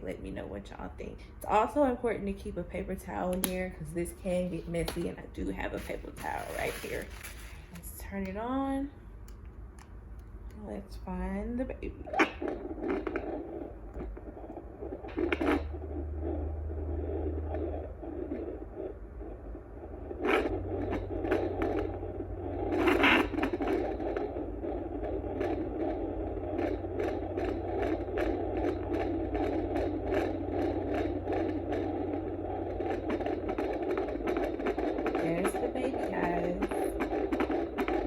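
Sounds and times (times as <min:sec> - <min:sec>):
low hum: 0:00.0 - 0:38.0
probe scraping crackles: 0:00.0 - 0:38.0
fast fetal heartbeat pulse: 0:11.1 - 0:38.0.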